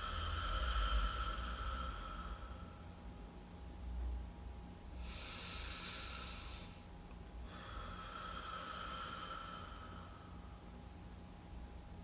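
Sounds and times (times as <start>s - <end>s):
person exhaling: 0.0s - 2.8s, 5.0s - 6.8s, 7.5s - 10.4s
low hum: 0.0s - 12.0s.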